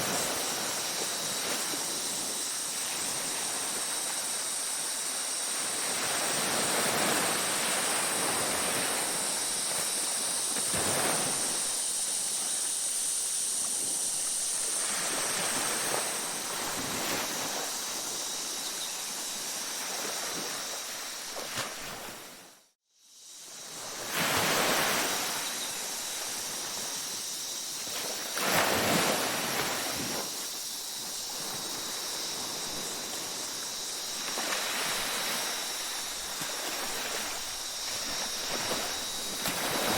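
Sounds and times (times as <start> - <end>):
ocean surf washing onto beach: 0.0 - 11.8, 31.3 - 39.9.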